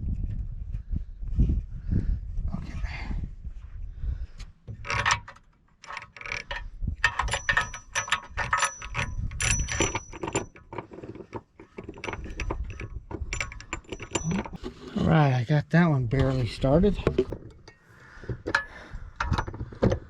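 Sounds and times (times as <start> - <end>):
metallic tool clicks and clanks: 4.8 - 14.7, 18.5 - 19.6.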